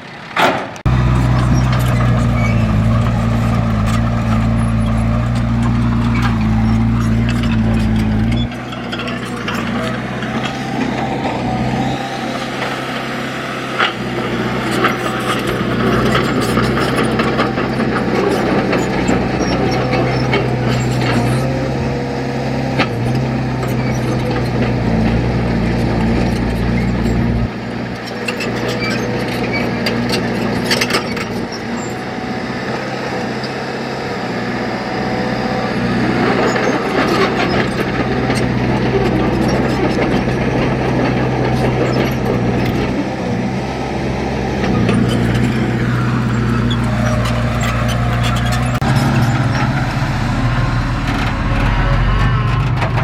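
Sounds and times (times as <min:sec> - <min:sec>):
heavy diesel engine running: 0:00.0 - 0:53.0
metal clanks: 0:00.3 - 0:11.9.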